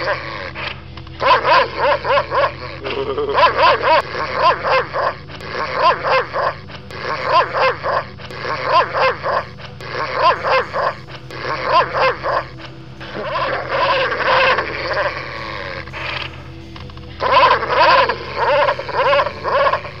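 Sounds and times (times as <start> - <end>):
dog barking: 4.4 - 9.5.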